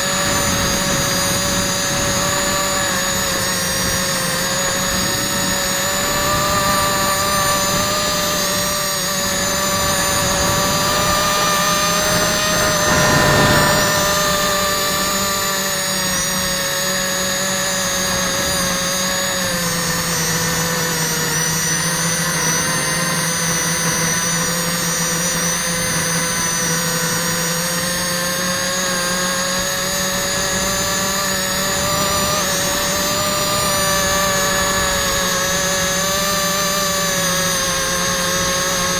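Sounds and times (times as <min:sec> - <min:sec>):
quadcopter propellers whining: 0:00.0 - 0:38.9.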